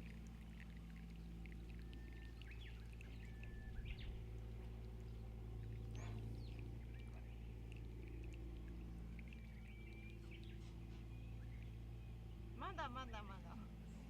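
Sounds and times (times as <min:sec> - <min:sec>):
steady low hum: 0:00.0 - 0:14.0
birds chirping and whistling: 0:01.2 - 0:04.2, 0:05.1 - 0:12.4.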